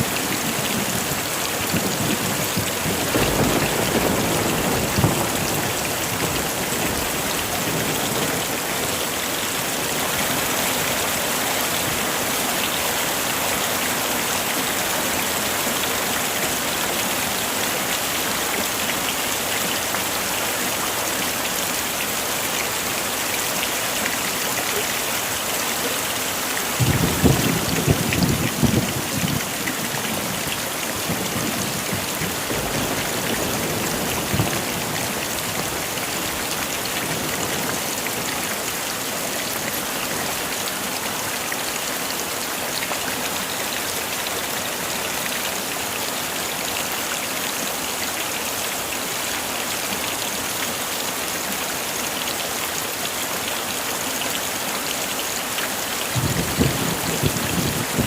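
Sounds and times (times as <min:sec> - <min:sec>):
heavy rain falling: 0:00.0 - 0:58.0
thunder rumbling: 0:02.0 - 0:08.6, 0:26.8 - 0:29.6, 0:31.0 - 0:38.3, 0:56.2 - 0:58.0.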